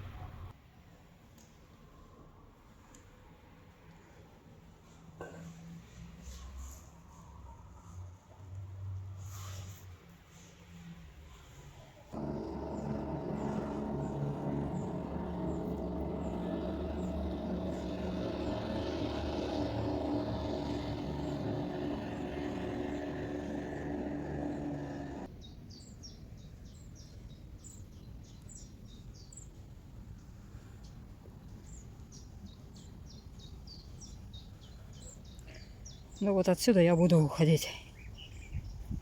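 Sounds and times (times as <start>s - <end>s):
engine rumbling: 12.2s - 25.3s.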